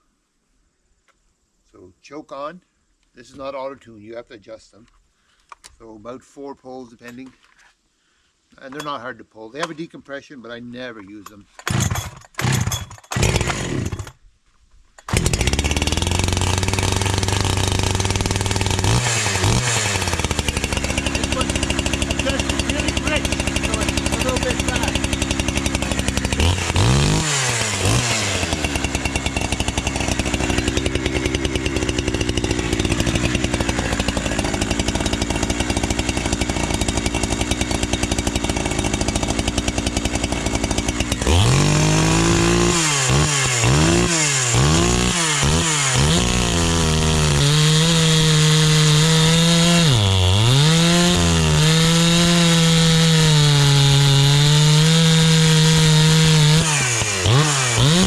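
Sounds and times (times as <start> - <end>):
chainsaw idling and revving: 11.2 - 14.2, 15.0 - 58.0.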